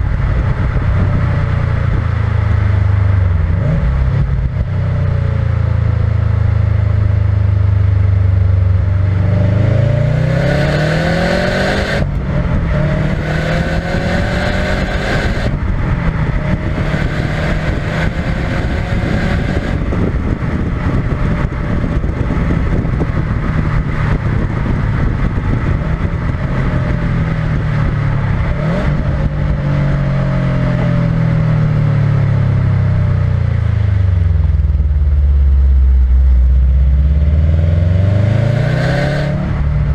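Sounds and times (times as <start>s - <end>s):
car engine accelerating: 0.0s - 39.9s
tyre and road noise: 0.0s - 39.9s.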